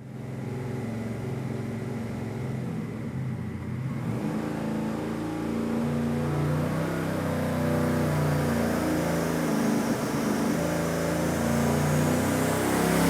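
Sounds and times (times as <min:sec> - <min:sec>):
engine revving on dyno: 0:03.8 - 0:13.0.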